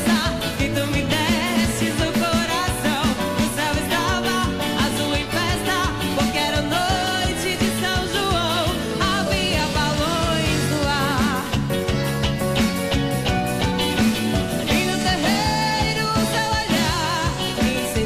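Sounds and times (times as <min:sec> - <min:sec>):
live dance band music: 0:00.0 - 0:18.0.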